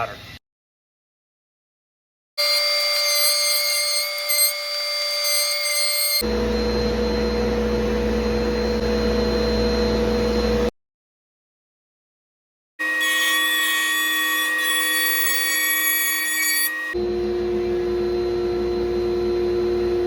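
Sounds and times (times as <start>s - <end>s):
wood router whining: 2.4s - 10.7s, 12.8s - 20.0s.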